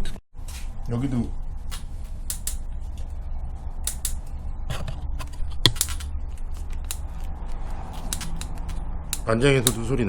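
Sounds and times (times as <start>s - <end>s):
steady low rumble: 0.7s - 10.0s
bicycle clicking and ticking: 1.7s - 2.9s, 3.8s - 4.4s, 5.6s - 10.0s.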